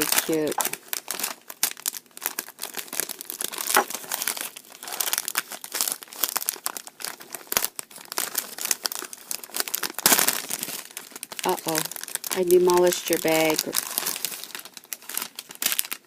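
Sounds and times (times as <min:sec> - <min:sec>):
tissue paper crinkling and tearing: 0:00.0 - 0:16.0.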